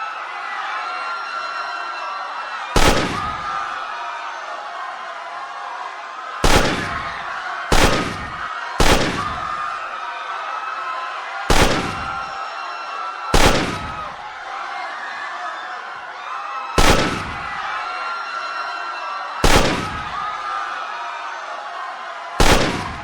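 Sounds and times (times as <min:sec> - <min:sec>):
crowd screaming and shouting: 0:00.0 - 0:23.0
gunshots with echo: 0:02.8 - 0:03.6, 0:06.4 - 0:09.7, 0:11.5 - 0:12.2, 0:13.4 - 0:14.2, 0:16.8 - 0:17.6, 0:19.4 - 0:20.2, 0:22.4 - 0:23.0.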